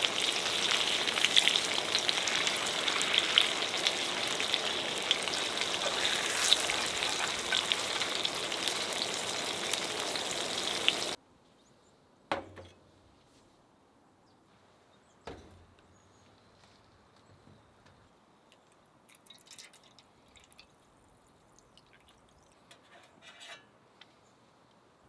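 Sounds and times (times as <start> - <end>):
tofu sizzling in oil: 0.0 - 11.2
single knock: 12.3 - 12.7.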